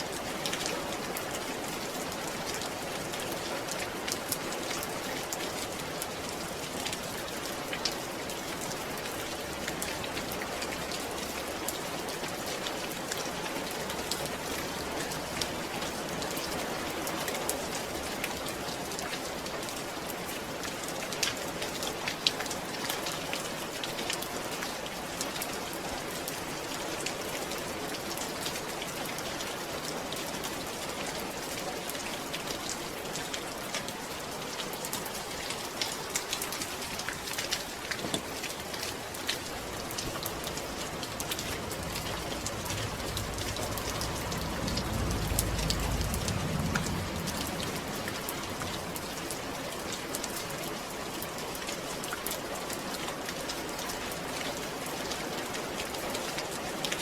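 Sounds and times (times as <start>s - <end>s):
steady rain falling: 0.0s - 57.0s
low rumble: 39.1s - 49.9s.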